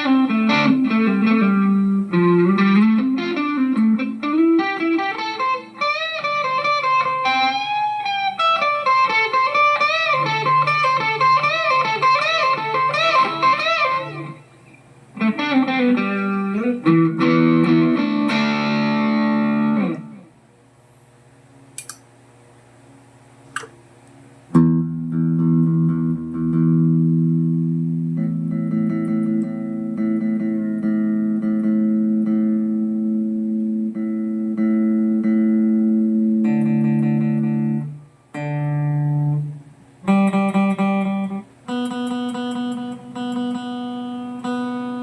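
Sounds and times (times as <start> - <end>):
electric guitar melody: 0.0 - 20.4, 24.5 - 45.0
small clicks: 21.8 - 22.0.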